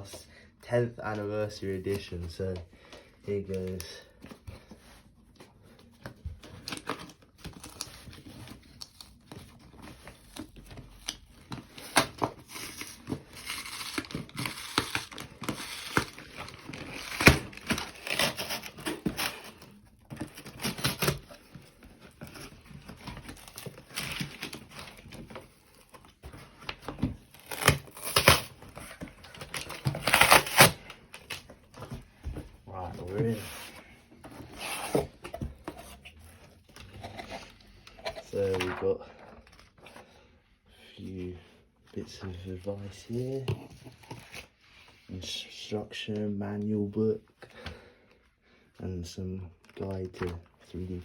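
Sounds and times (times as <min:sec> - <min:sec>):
packaging crinkling and rustling: 0:05.8 - 0:40.1
cardboard tearing: 0:06.6 - 0:31.5.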